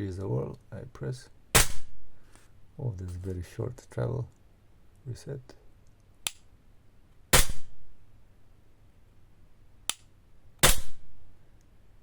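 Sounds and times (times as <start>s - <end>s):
airsoft pistol shots: 1.6s - 2.0s, 7.3s - 7.8s, 10.6s - 11.1s.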